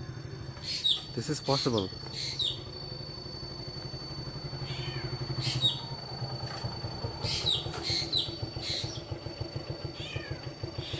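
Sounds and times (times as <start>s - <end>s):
low pulsing hum: 0.0s - 10.9s
bird calls dropping in pitch: 7.2s - 9.1s.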